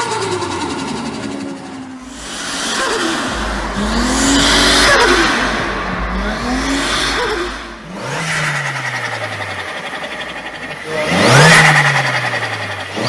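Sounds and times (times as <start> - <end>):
turbocharged car engine revving: 2.0 - 13.0.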